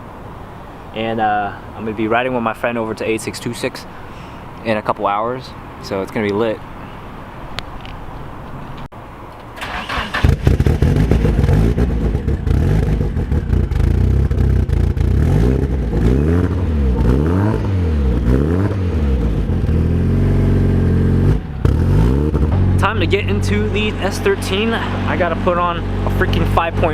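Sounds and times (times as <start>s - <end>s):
car engine starting and revving: 9.6s - 26.9s.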